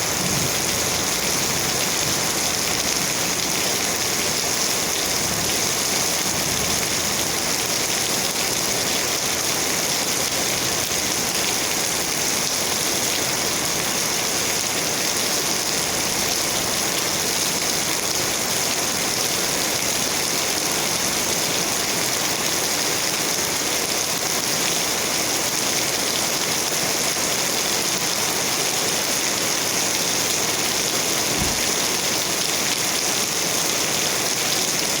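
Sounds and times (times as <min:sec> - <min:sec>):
steady rain hiss: 0:00.0 - 0:35.0
low thump: 0:31.3 - 0:31.8.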